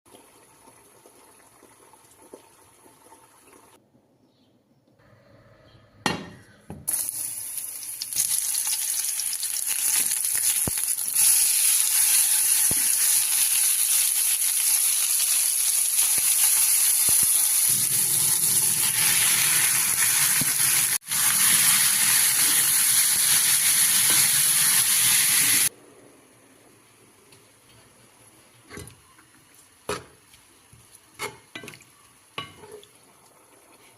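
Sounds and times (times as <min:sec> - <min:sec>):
squid sizzling in frying pan: 0:06.9 - 0:25.7.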